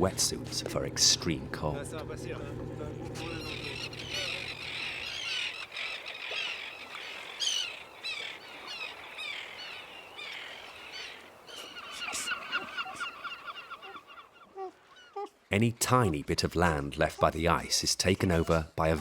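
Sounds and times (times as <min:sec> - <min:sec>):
colony of animals chirping: 0:03.2 - 0:15.3.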